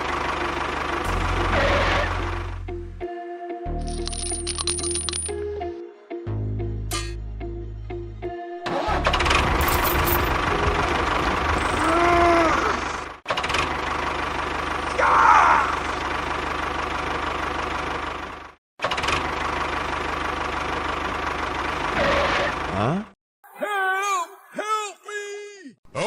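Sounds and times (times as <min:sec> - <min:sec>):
short squeal: 0:01.5 - 0:02.2, 0:22.0 - 0:22.6.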